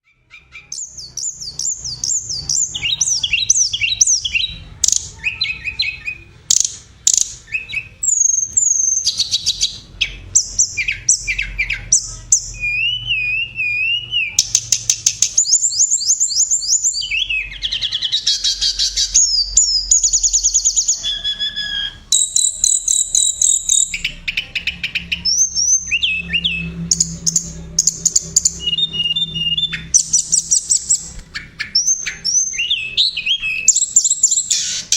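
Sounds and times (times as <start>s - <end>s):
songbird singing trills: 0.0s - 34.9s.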